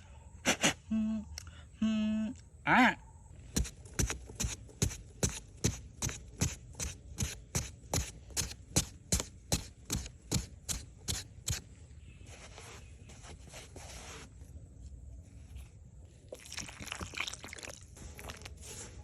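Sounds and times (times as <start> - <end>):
sharp chopping or hammering strikes: 3.5 - 11.6.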